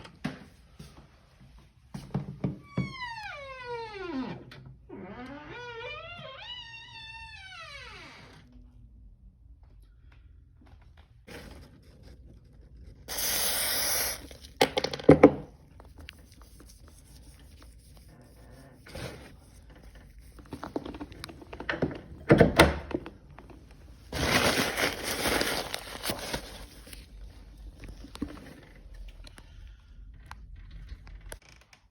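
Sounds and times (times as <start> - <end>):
aerosol spray hissing: 13.1 - 14.4.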